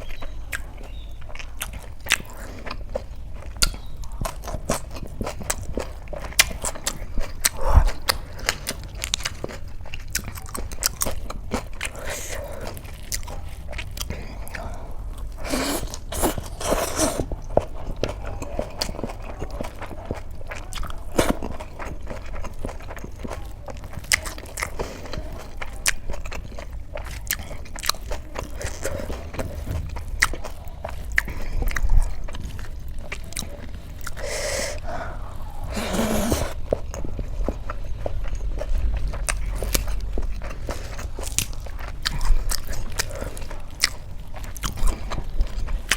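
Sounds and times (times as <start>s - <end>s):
person chewing crunchy food: 0.0s - 45.9s
mouth clicks: 34.1s - 36.6s.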